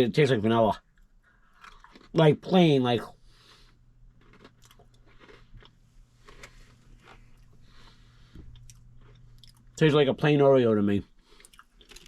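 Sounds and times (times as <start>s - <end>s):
faint low hum: 0.0s - 12.0s
person chewing crunchy cookie: 0.9s - 9.8s, 11.2s - 12.0s.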